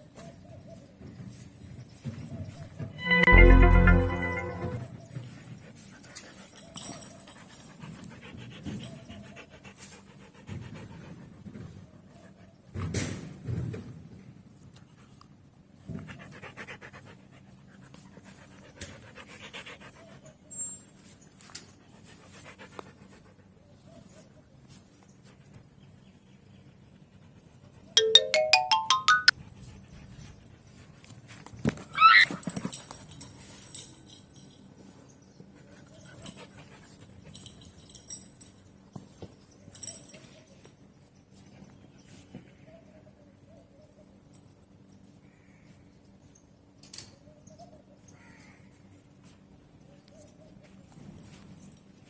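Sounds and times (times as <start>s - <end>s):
dog panting: 7.4s - 11.4s.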